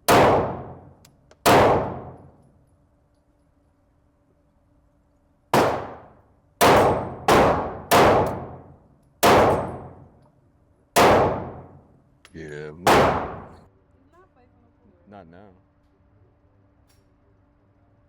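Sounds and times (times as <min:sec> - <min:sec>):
pistol shots: 0:00.0 - 0:02.4, 0:05.6 - 0:10.1, 0:11.0 - 0:11.8, 0:12.8 - 0:13.7.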